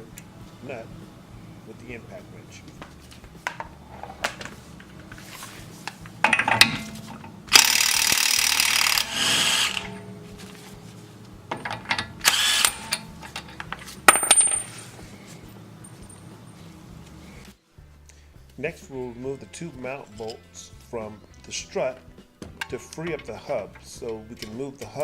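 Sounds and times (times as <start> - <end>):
impact wrench bursts: 6.2 - 10.2, 11.5 - 14.8
metallic clinks: 11.5 - 16.7.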